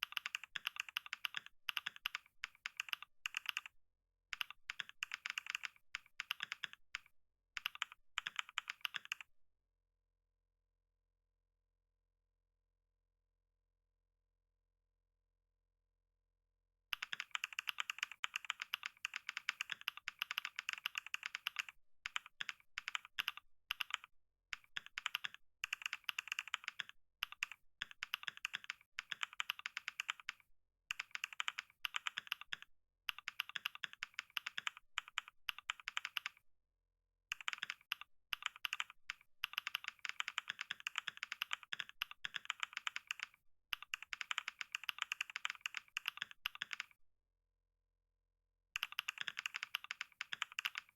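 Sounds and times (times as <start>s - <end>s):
fast keyboard typing: 0.0s - 3.7s, 4.3s - 9.3s, 17.0s - 36.4s, 37.3s - 47.0s, 48.8s - 50.9s.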